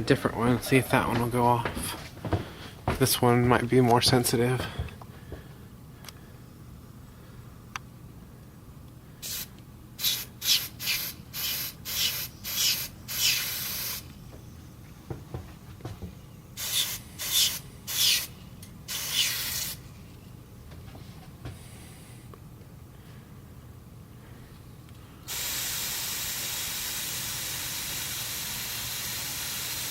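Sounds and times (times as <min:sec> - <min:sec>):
aerosol spray bursts hissing: 0:09.2 - 0:14.1, 0:16.6 - 0:18.3, 0:18.9 - 0:19.8, 0:25.3 - 0:29.9.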